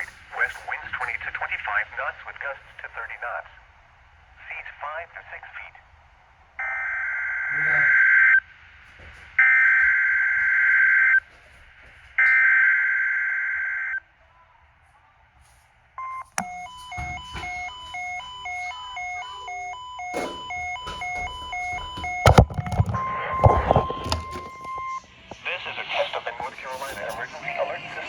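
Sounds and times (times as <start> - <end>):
stepped electronic beeping: 16.0 - 25.1
clicks: 21.9 - 25.0.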